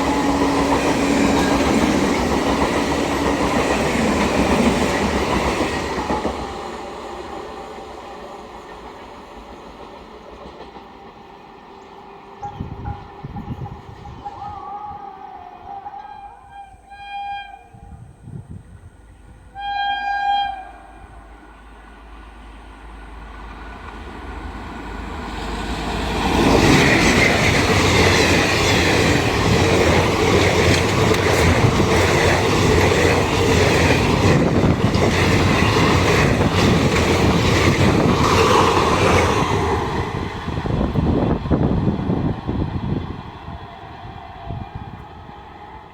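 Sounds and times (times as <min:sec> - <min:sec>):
train wheels rattling on track: 0:00.0 - 0:14.4, 0:20.4 - 0:45.9
train horn blasts: 0:12.4 - 0:18.1, 0:19.4 - 0:22.7.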